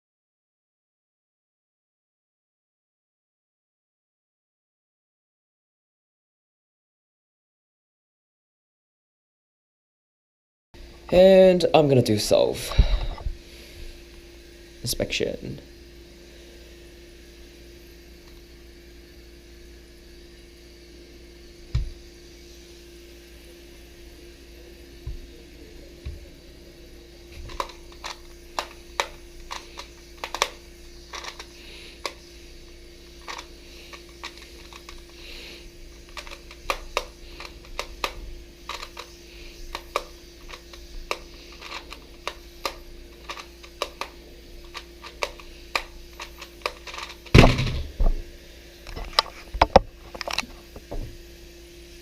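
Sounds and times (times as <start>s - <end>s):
puzzle clicking: 27.4s - 32.3s, 36.1s - 47.4s.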